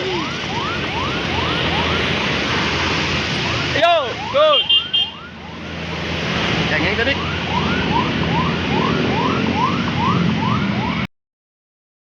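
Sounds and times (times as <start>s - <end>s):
engine and road noise: 0.0s - 11.1s
bus horn whooping: 4.6s - 5.2s.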